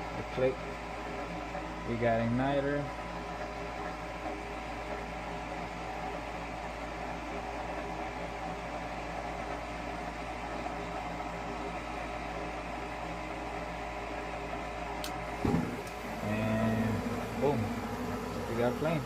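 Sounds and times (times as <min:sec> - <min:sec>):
furnace motor humming: 0:00.0 - 0:19.0
short thump: 0:15.4 - 0:15.8.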